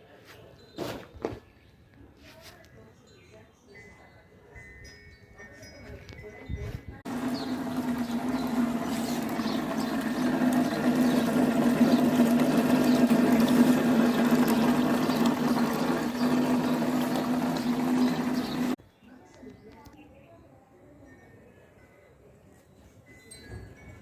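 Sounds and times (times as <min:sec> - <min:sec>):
electric pump humming: 0:07.1 - 0:18.8
water trickling and splashing: 0:07.1 - 0:18.8.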